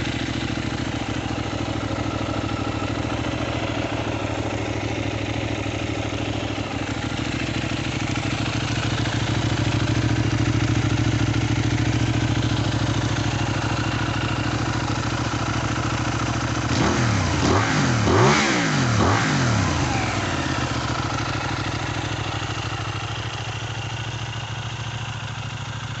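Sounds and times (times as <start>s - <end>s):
motorcycle engine idling: 0.0s - 26.0s
motorcycle throttle revving: 16.7s - 21.4s.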